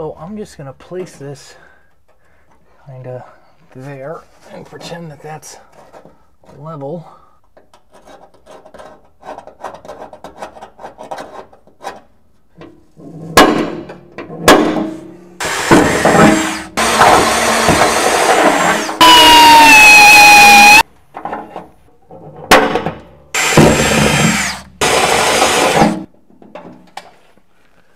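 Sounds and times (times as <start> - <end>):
sharp knocks: 13.4 - 18.7
electric drill running: 15.4 - 20.8, 23.4 - 26.0.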